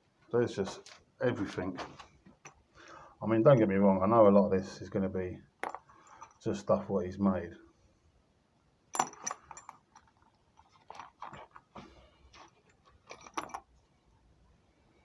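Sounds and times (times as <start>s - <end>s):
metal parts clinking in a box: 8.9s - 13.7s.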